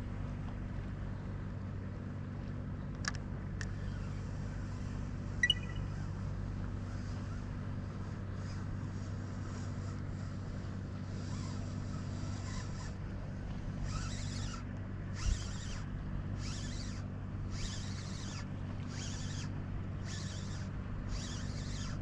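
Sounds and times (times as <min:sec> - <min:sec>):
low engine hum: 0:00.0 - 0:22.0
short high chirp: 0:05.4 - 0:06.0.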